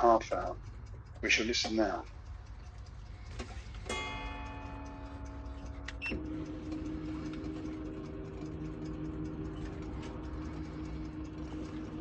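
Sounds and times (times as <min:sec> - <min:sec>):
clock ticking faintly: 0:00.0 - 0:12.0
clock striking a gong: 0:03.8 - 0:12.0.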